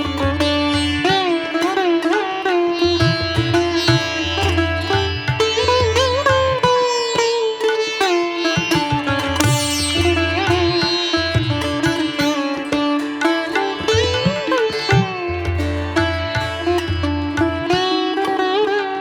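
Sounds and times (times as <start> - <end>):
plucked string melody: 0.0 - 19.0.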